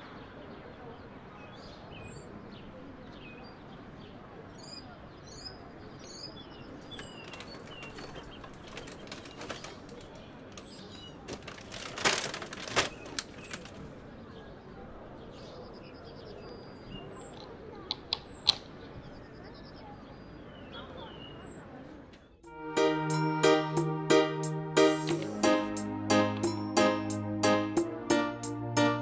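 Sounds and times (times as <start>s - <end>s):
small birds chirping: 0.0s - 12.0s, 12.6s - 22.4s.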